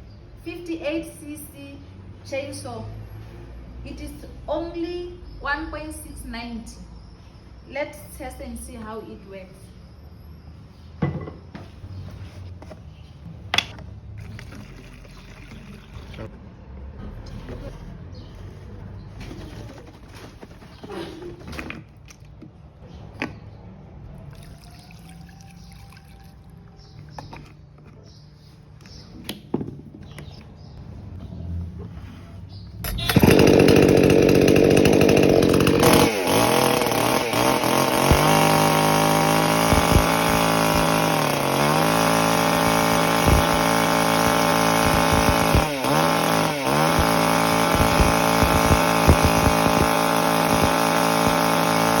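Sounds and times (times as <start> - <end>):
chainsaw running loudly: 32.9 - 52.0.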